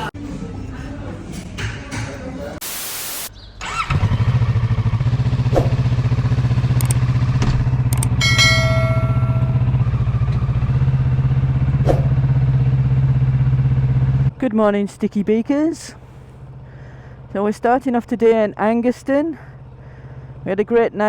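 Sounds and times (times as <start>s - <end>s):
motorcycle engine running steadily: 3.9s - 21.0s
short high tone: 8.2s - 10.0s.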